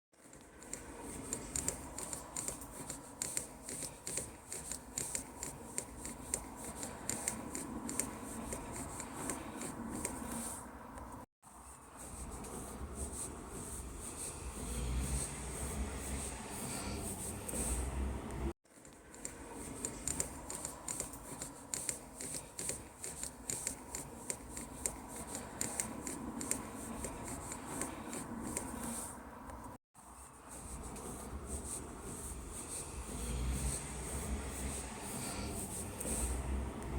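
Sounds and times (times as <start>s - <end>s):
low vehicle engine rumble: 12.0s - 18.6s, 30.4s - 36.9s.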